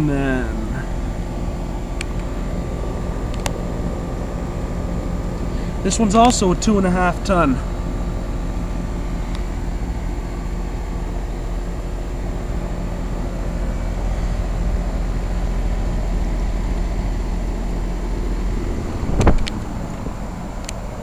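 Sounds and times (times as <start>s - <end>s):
compressor hum: 0.0s - 21.0s
fans rushing: 12.2s - 21.0s
brief bump: 19.0s - 19.6s.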